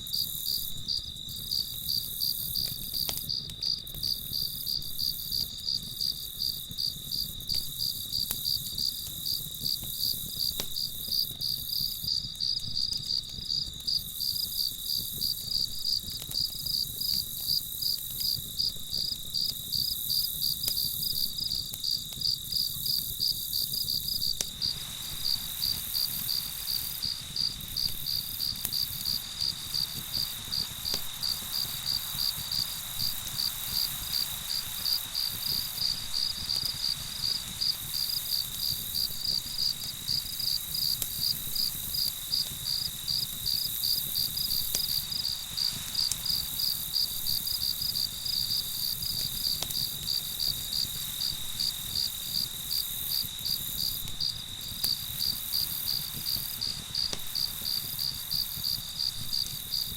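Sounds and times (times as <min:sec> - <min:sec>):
crickets chirping: 0:00.0 - 0:59.9
soft hiss: 0:23.4 - 0:59.9.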